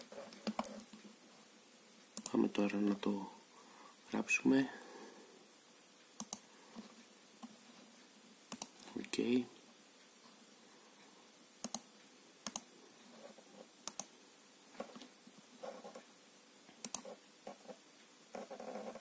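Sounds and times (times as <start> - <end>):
computer mouse and keyboard clicks: 0.2 - 1.0, 6.2 - 7.5, 8.5 - 8.9, 11.6 - 12.7, 16.8 - 17.7.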